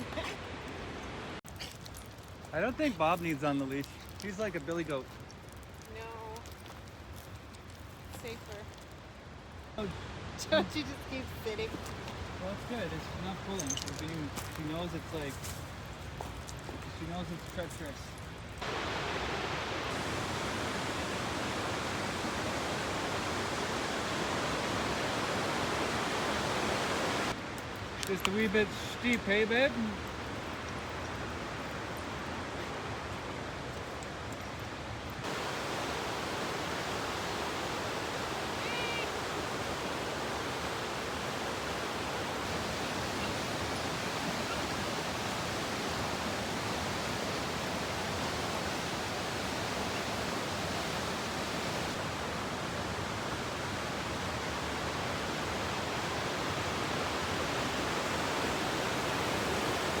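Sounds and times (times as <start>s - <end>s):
waterfall rushing: 18.6s - 27.4s, 34.6s - 60.0s.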